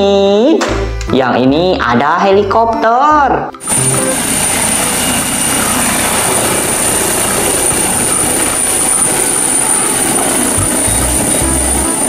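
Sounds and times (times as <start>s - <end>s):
helicopter rotor and engine: 3.6s - 12.0s
high-pitched whine: 3.6s - 12.0s.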